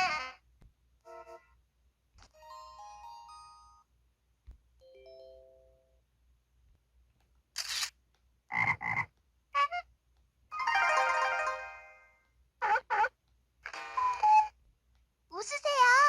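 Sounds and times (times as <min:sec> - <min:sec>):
soft phone chime: 0:04.8 - 0:06.0
camera shutter clicks: 0:07.6 - 0:07.9.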